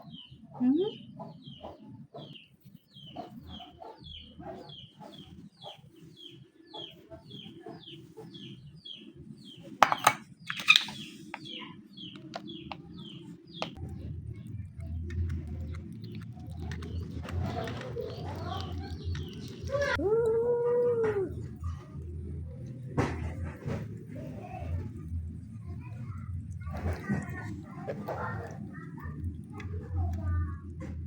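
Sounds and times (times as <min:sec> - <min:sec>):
small animal peeping calls: 0:00.0 - 0:09.8, 0:10.4 - 0:21.8
low rumble: 0:13.8 - 0:31.0.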